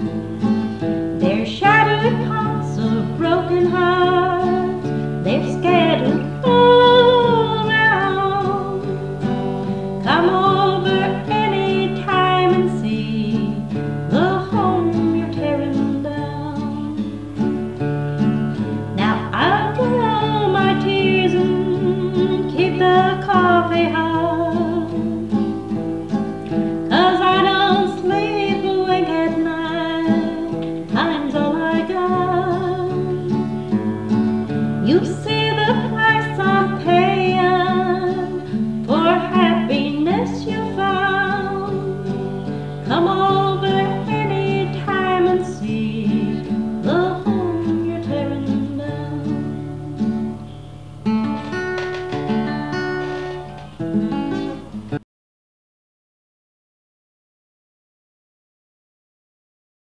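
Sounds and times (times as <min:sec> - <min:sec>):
guitar: 0:00.0 - 0:55.0
woman singing with vibrato: 0:01.2 - 0:17.5, 0:18.8 - 0:25.4, 0:26.9 - 0:33.8, 0:34.7 - 0:50.4, 0:52.3 - 0:53.5.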